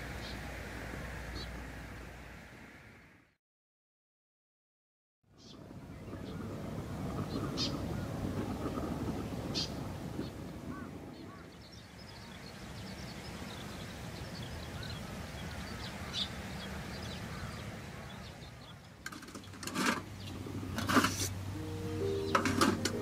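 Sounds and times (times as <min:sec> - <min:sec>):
distant birds calling: 0:05.3 - 0:23.0.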